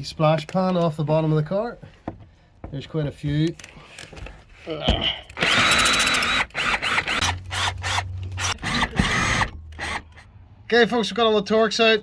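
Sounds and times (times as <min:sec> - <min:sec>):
cordless drill motor whining: 0:05.4 - 0:10.2.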